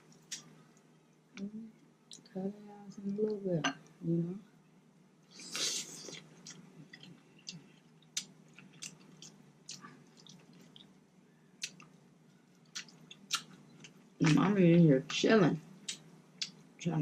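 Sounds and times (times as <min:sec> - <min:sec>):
close chewing of food: 0:05.9 - 0:11.0, 0:11.6 - 0:14.4
mouth clicks and smacks: 0:11.6 - 0:11.9.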